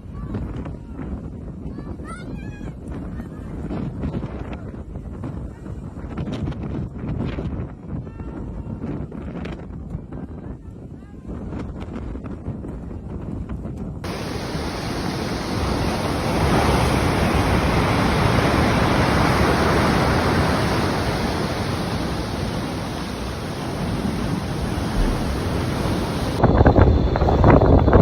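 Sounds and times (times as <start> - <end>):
rushing storm noise: 14.0 - 28.0.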